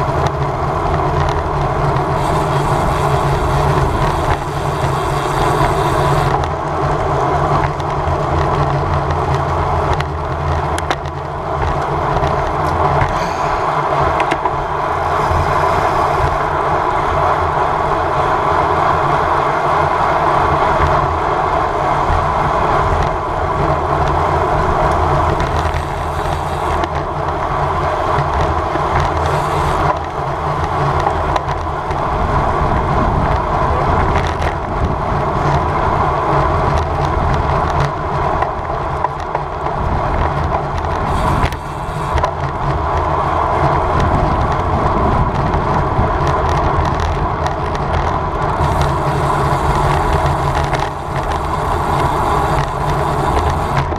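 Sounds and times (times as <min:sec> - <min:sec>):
tyres rumbling on tarmac: 0:00.0 - 0:53.9
wind rushing over microphone: 0:00.0 - 0:53.9.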